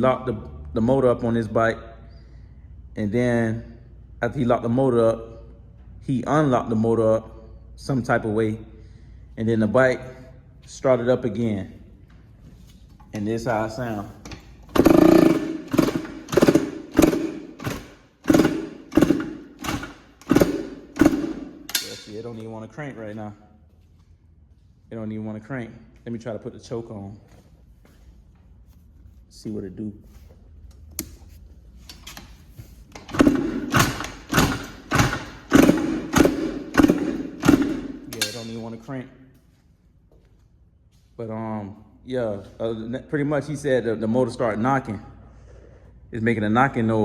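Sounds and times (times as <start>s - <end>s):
two-stroke engine sputtering: 14.6s - 21.8s, 33.0s - 38.2s.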